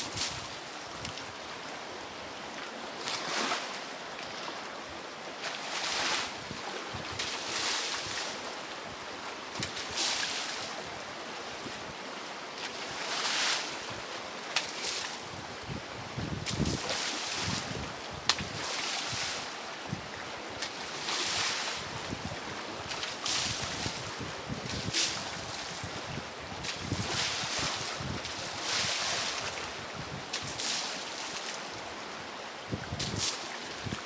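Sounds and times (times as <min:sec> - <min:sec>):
waves surging and splashing: 0:16.5 - 0:34.0.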